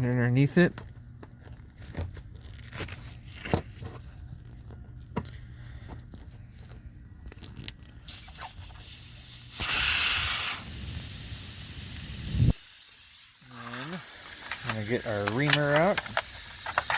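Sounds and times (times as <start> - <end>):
air hissing from tire: 8.0 - 16.9.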